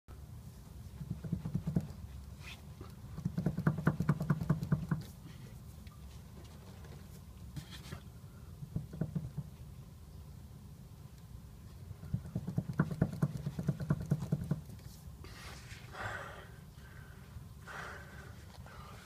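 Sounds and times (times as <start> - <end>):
shock absorbers knocking: 3.2 - 5.1, 12.1 - 14.7.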